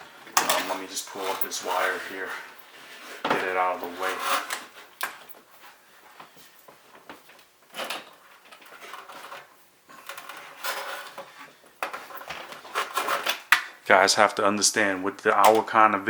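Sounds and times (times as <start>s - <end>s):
cable scraping on desk: 0.4s - 5.1s, 7.7s - 13.6s.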